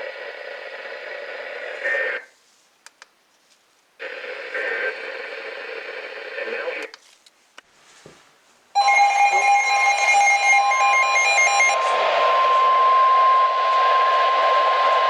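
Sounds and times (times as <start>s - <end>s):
lower beeping alarm tone: 8.8s - 13.6s
steady alarm tone: 8.8s - 15.0s.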